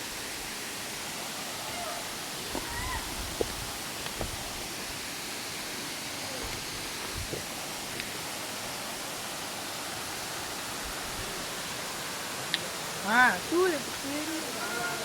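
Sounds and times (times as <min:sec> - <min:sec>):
waterfall rushing: 0:00.0 - 0:15.0.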